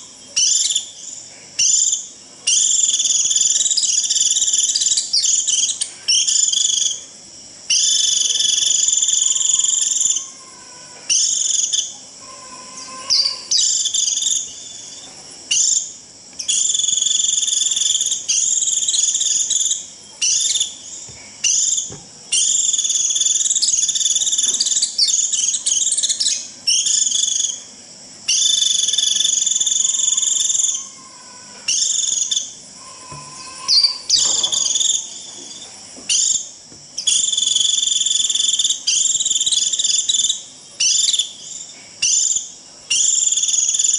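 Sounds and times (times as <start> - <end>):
bird shrill buzzing call: 7.7 - 14.9, 28.3 - 35.2.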